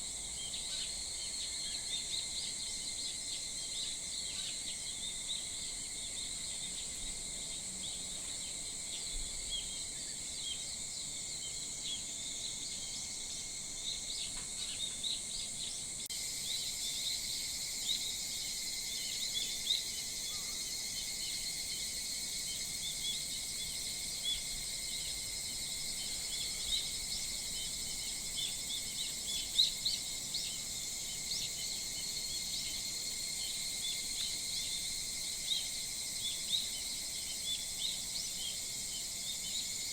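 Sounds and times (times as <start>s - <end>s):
high-pitched insect drone: 16.1s - 39.9s.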